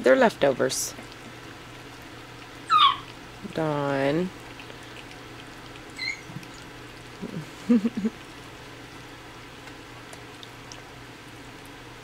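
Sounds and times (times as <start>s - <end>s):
puppies smacking and lapping: 0.2s - 12.0s
puppy high squeak: 2.7s - 3.1s, 6.0s - 6.4s
puppy grunts or whines: 5.9s - 7.6s.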